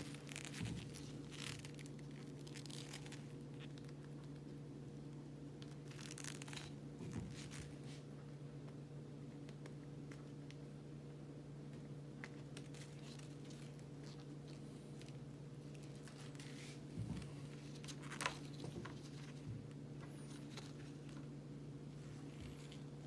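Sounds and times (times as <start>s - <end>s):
toy packaging clicks and crinkles: 0.0s - 4.0s, 5.6s - 7.7s
low electrical hum: 0.0s - 23.0s.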